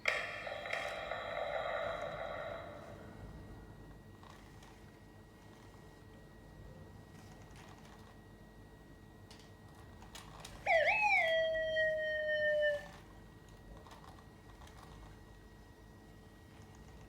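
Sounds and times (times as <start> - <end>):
robot dog electronic warbling tone: 10.7 - 12.9.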